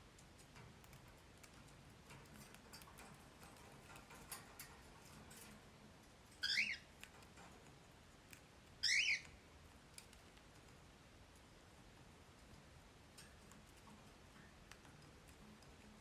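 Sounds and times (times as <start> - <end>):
parrot chirping: 6.4 - 7.0, 8.8 - 9.4
faint clicks: 6.4 - 11.5.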